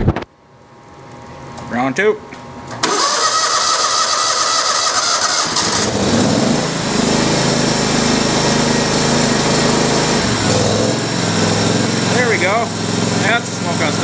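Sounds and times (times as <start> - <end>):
lawn tractor engine running: 2.8 - 14.0.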